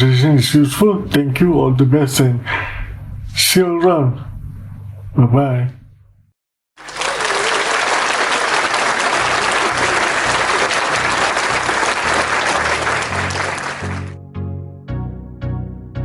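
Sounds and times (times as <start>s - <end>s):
crowd applause: 6.8s - 14.2s
background music: 8.9s - 16.0s.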